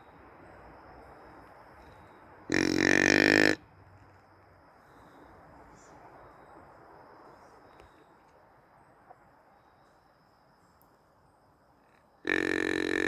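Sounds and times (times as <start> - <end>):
deer call held pitch: 2.5 - 3.6, 12.3 - 13.0.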